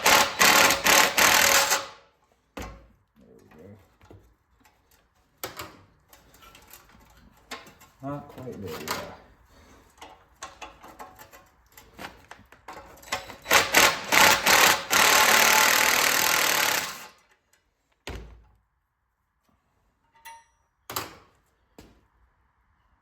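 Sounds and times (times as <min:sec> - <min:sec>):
power tool running: 0:00.0 - 0:02.0, 0:13.5 - 0:17.2
tool clicks and rattles: 0:00.0 - 0:02.0, 0:09.9 - 0:17.6.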